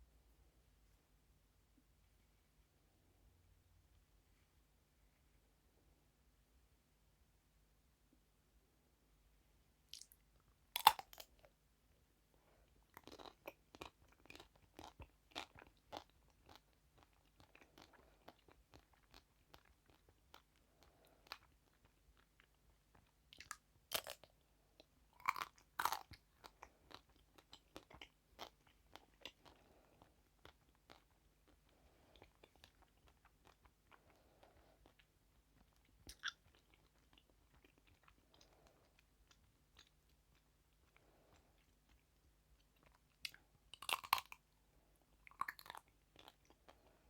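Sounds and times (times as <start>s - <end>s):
soft chewing: 9.8s - 47.0s
teeth crunching chocolate shell: 10.8s - 11.5s, 23.0s - 24.3s, 43.3s - 44.4s, 45.3s - 46.7s.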